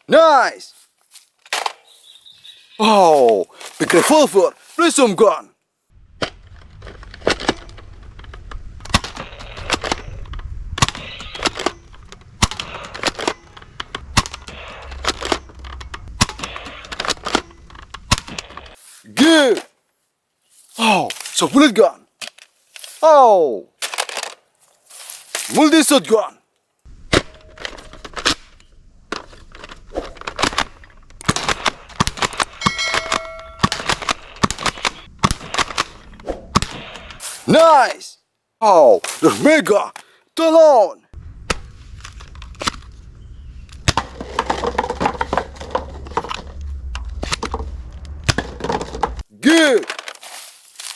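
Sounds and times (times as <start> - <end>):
rustling: 22.3 - 23.0, 23.9 - 25.6, 41.6 - 50.9
brief metallic ring: 32.6 - 33.8.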